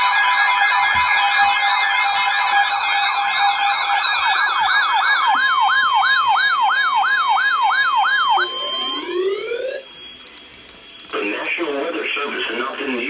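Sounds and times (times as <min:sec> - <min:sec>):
electronic siren: 0:00.0 - 0:12.7.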